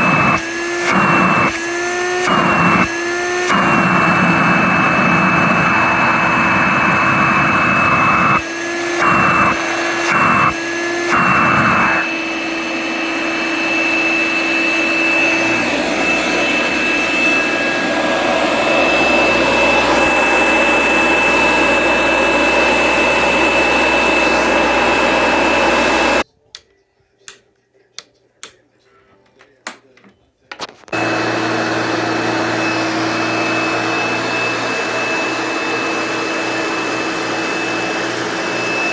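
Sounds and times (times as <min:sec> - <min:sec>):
upright vacuum cleaner running: 0:00.0 - 0:26.2, 0:30.7 - 0:38.9
clicks: 0:26.5 - 0:28.6.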